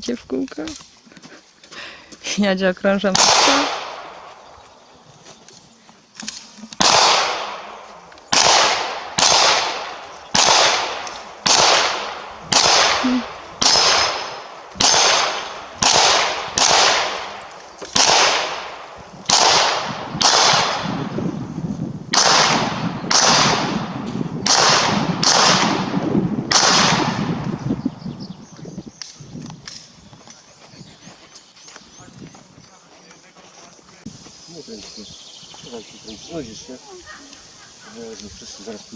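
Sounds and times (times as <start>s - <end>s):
gunshots: 3.1s - 4.4s, 6.8s - 21.1s, 22.1s - 27.6s.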